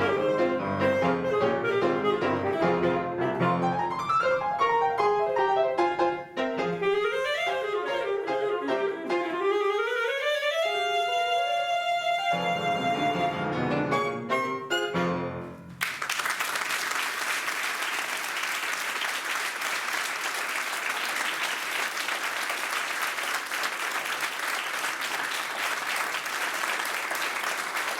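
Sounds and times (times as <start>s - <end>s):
audience applause: 15.8s - 27.9s.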